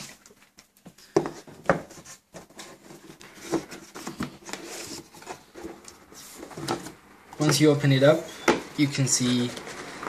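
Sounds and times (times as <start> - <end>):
cardboard rubbing and scraping: 1.8 - 7.0, 9.5 - 10.0.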